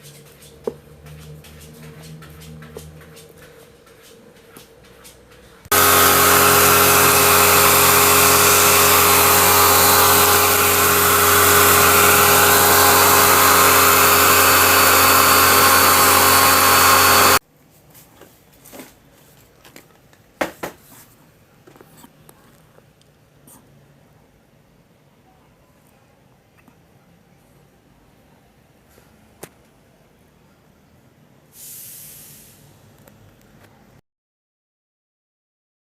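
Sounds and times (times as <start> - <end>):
electric motor whirring: 5.7 - 17.4.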